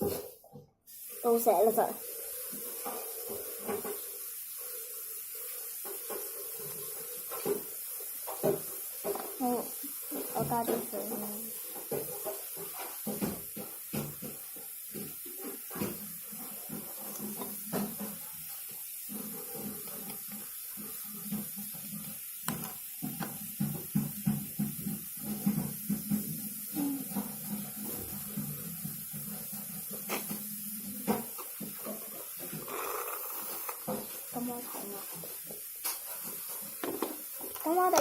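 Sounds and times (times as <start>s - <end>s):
plastic parts tapping and clicking: 36.8s - 38.0s.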